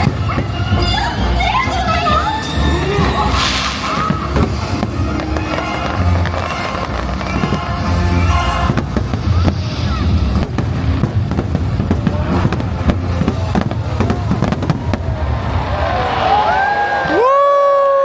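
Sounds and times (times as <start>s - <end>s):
loud music with heavy bass: 0.0s - 14.6s
fireworks bursts and crackles: 0.0s - 17.2s.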